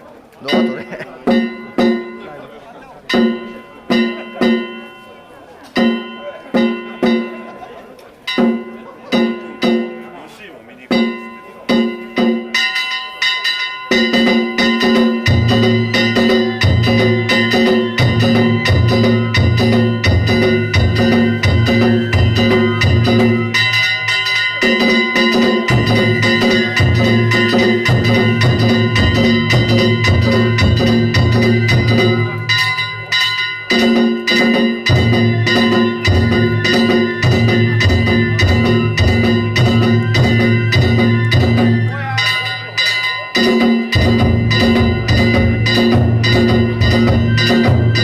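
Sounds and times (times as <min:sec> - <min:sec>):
small gongs clanging: 0:00.4 - 0:48.0
taiko drum beating fast: 0:00.5 - 0:02.2, 0:08.4 - 0:10.1, 0:13.9 - 0:23.9, 0:24.6 - 0:42.4, 0:43.4 - 0:48.0.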